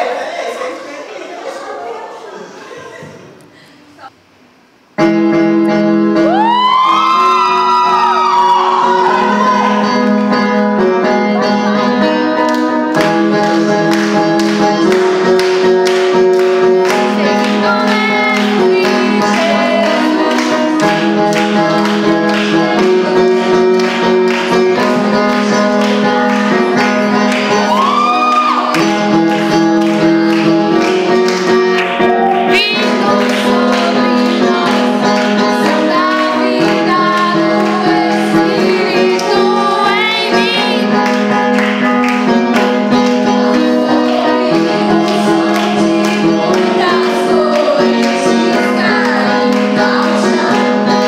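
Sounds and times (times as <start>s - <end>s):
women singing: 16.9s - 21.8s, 32.3s - 40.8s, 43.2s - 51.0s.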